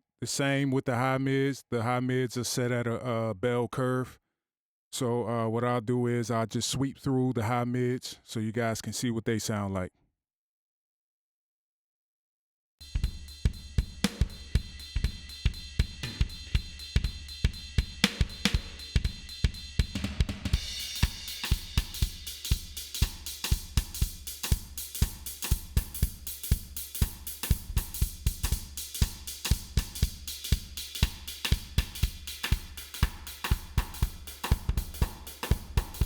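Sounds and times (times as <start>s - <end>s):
drum kit groove: 12.8s - 36.0s.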